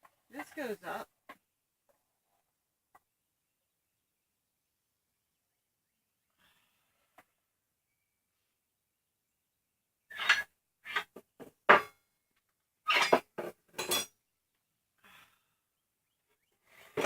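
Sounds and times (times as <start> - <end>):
metal saw parts clanking: 10.1 - 11.0, 12.9 - 14.1.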